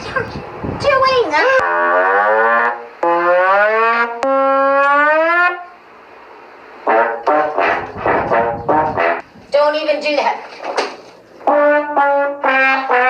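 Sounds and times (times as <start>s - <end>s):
brass horn blaring: 1.6s - 5.9s, 6.8s - 9.3s, 11.4s - 13.0s.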